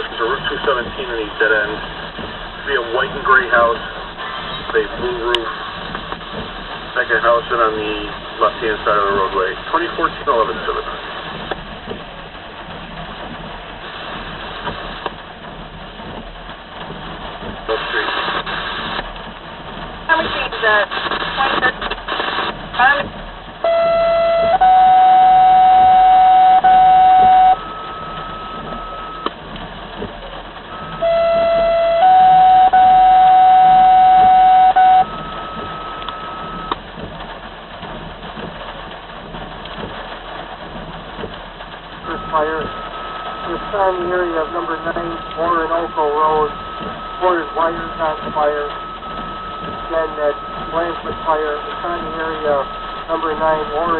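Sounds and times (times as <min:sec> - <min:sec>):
radio scanner hiss and hum: 0:00.0 - 0:11.7, 0:17.6 - 0:19.2, 0:20.1 - 0:29.4, 0:30.1 - 0:36.8, 0:42.0 - 0:53.9
faint radio hiss: 0:06.9 - 0:11.4, 0:17.7 - 0:19.0, 0:42.1 - 0:53.9.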